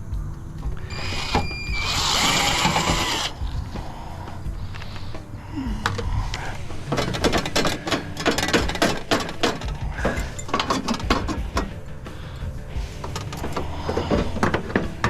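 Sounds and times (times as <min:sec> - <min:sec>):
hand tools clicking on sheet metal: 0:06.9 - 0:11.8.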